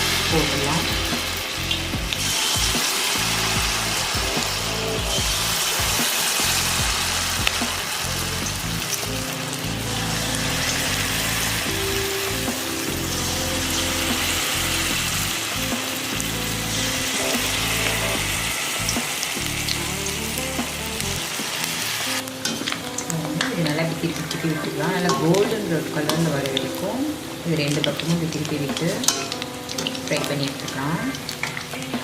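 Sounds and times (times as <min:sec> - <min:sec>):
background music: 0:00.0 - 0:32.0
food deep-frying in hot oil: 0:00.0 - 0:32.0.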